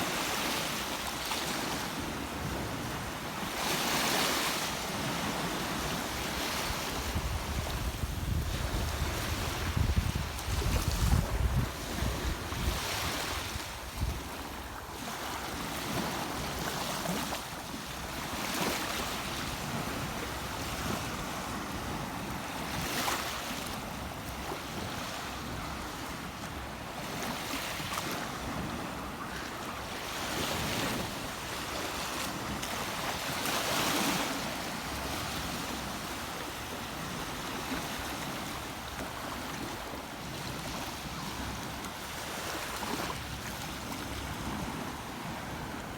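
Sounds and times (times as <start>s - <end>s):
wind buffeting microphone: 5.8s - 14.5s.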